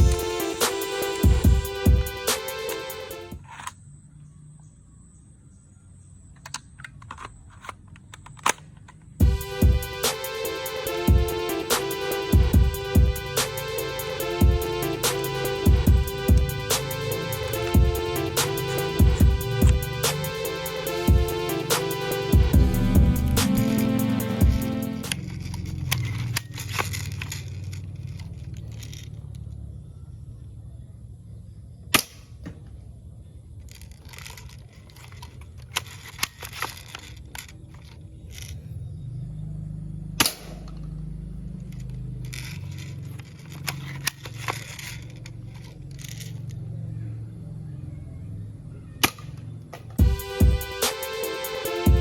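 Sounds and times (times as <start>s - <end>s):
toy gun shots: 40.2s - 40.9s, 49.0s - 50.0s.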